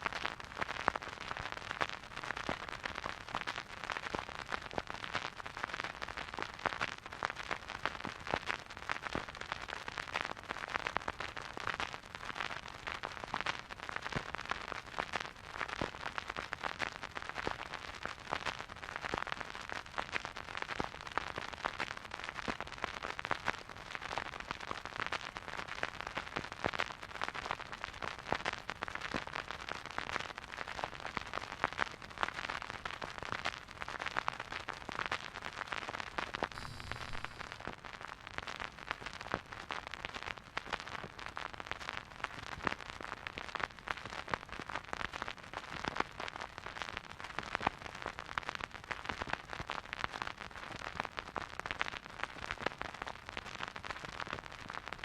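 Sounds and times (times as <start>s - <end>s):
vinyl record crackle: 0.0s - 55.0s.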